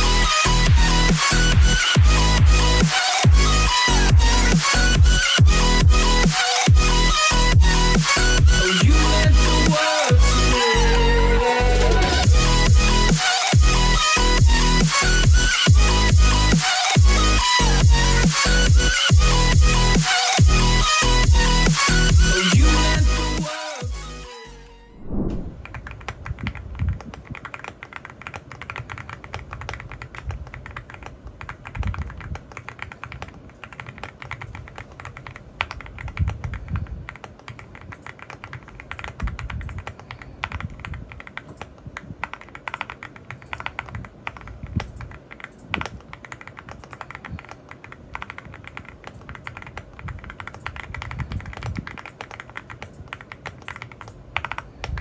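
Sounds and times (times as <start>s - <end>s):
keyboard typing: 25.0s - 55.0s.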